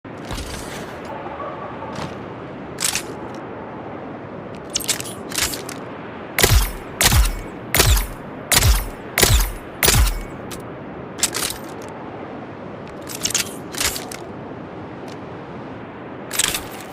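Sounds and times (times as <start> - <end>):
dart gun shots: 6.4 - 10.3.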